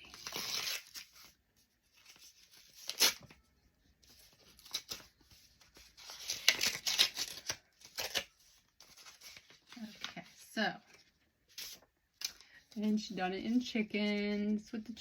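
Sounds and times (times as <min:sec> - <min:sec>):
paper tearing: 0:00.0 - 0:01.3, 0:02.0 - 0:03.3, 0:06.0 - 0:08.3
paper rustling: 0:04.0 - 0:14.6.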